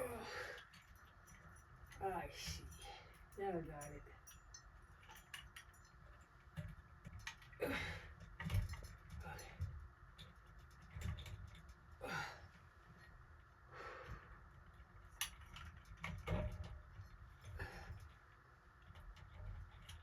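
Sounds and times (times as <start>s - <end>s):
small parts and tools clicking: 0.0s - 13.4s, 14.0s - 20.0s.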